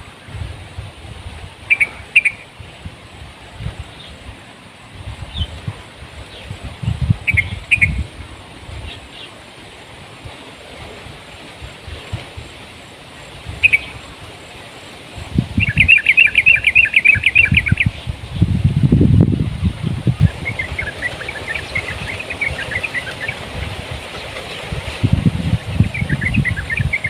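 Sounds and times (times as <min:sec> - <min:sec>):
wind buffeting microphone: 0:00.0 - 0:27.0
small birds chirping: 0:01.7 - 0:02.5, 0:07.2 - 0:08.0, 0:13.6 - 0:14.1, 0:15.6 - 0:18.5.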